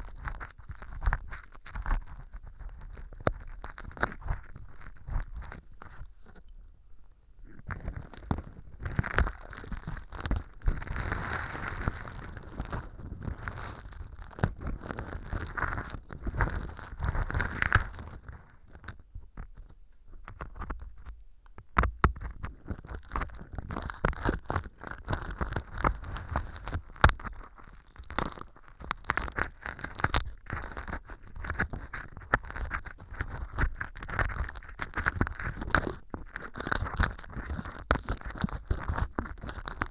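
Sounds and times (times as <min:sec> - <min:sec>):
earpick scraping and crackling: 0:07.5 - 0:21.1, 0:21.8 - 0:39.9.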